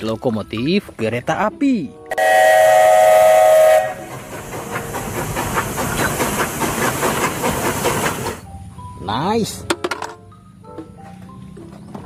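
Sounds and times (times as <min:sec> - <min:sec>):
steam train whistle: 0:02.1 - 0:04.1
steam locomotive chugging: 0:02.2 - 0:08.5.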